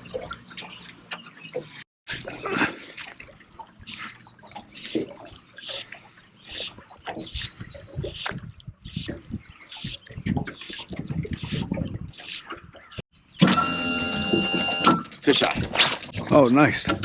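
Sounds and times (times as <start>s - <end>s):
river water splashing: 0.0s - 8.3s.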